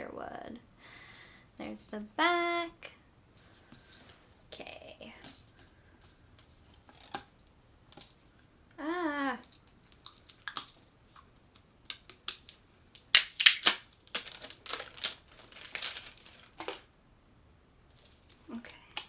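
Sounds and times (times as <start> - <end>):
plastic wrapping crinkling: 12.0 - 16.9.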